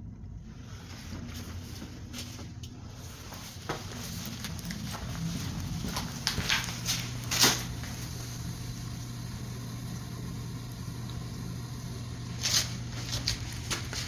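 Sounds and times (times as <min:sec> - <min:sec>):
steady low hum: 0:00.0 - 0:14.0
footsteps or scuffs: 0:00.8 - 0:08.0, 0:12.4 - 0:14.0.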